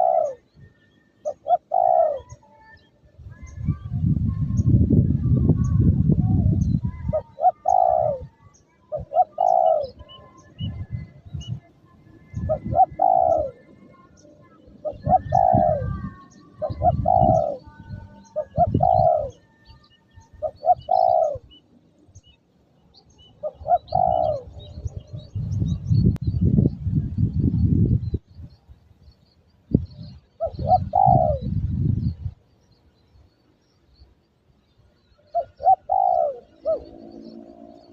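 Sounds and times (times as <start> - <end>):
dove cooing: 0.0 - 0.6, 1.2 - 2.6, 5.2 - 21.6, 23.4 - 25.7, 30.0 - 31.8, 35.2 - 37.9
wind rumbling on microphone: 1.5 - 22.4, 23.4 - 33.8.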